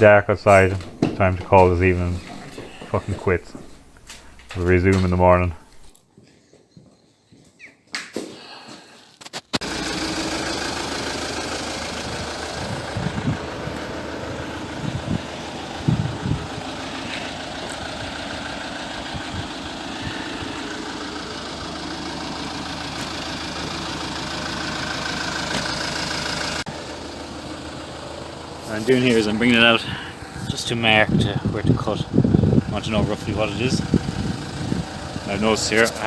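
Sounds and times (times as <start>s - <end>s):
engine idling: 9.6s - 36.0s
short low thumps: 14.8s - 16.7s.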